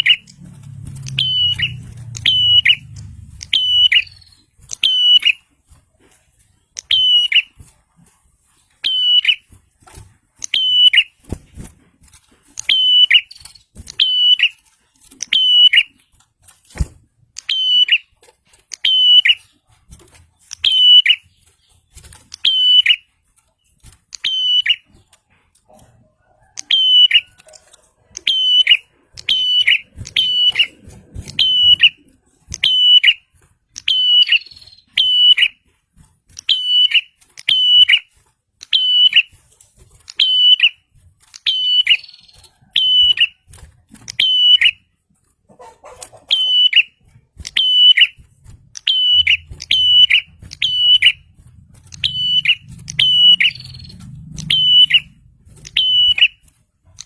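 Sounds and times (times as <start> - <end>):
bird calling sharp high notes: 1.0 - 5.4, 52.0 - 56.4.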